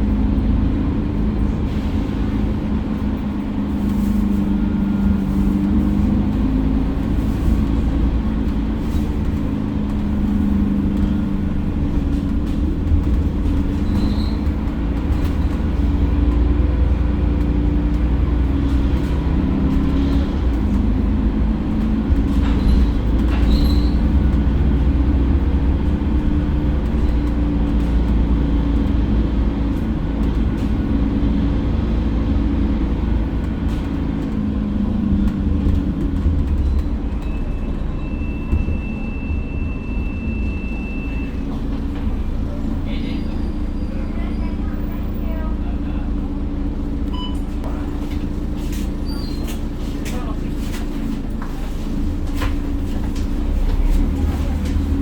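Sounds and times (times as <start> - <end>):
bus engine droning: 0.0 - 55.0
brief high squeaks: 13.8 - 14.5, 22.6 - 24.1, 49.0 - 49.6.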